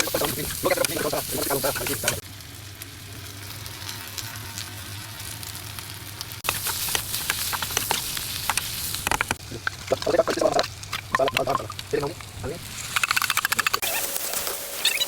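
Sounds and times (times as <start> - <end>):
spoon stirring in a pan: 0.0 - 2.2
food sizzling in a pan: 0.0 - 11.0.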